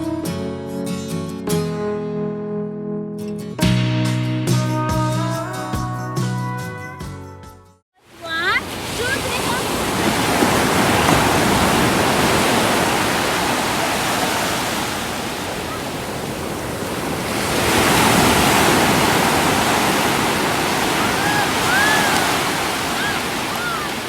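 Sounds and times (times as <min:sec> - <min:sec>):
sea waves breaking on beach: 0:08.0 - 0:24.0.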